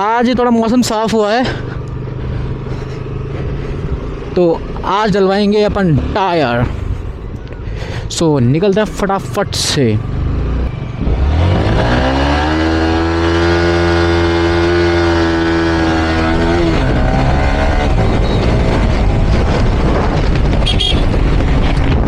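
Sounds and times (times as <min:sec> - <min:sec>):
motorcycle engine: 0:00.0 - 0:08.0, 0:08.6 - 0:22.0
road noise: 0:00.0 - 0:22.0.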